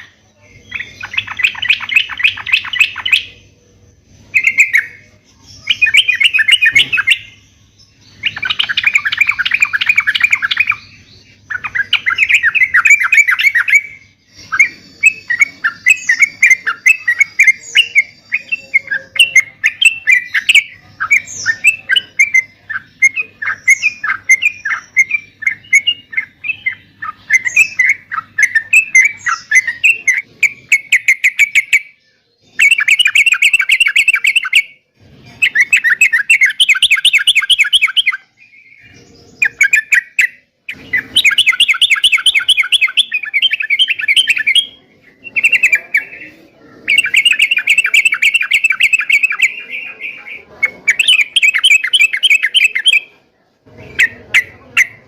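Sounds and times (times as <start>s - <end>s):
bird chattering and trilling: 0.0s - 55.0s.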